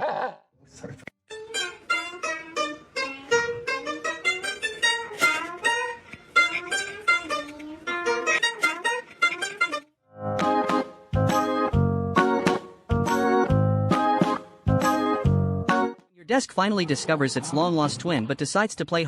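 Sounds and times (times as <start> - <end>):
plucked string instrument tune: 1.3 - 16.0.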